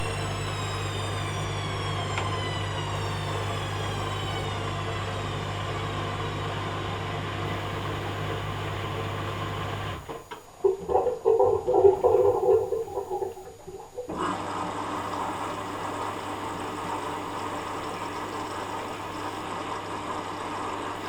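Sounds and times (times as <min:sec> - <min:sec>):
washing machine running: 0:00.0 - 0:21.0.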